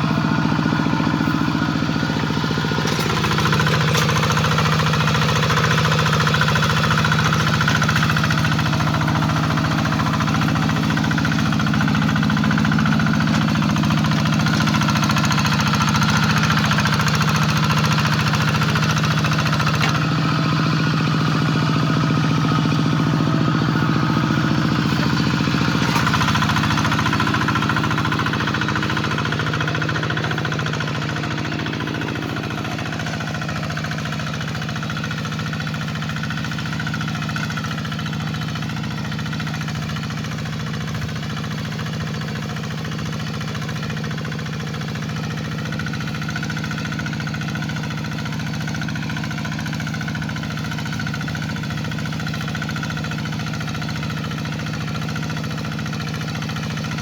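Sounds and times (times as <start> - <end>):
diesel engine running under load: 0.0 - 57.0.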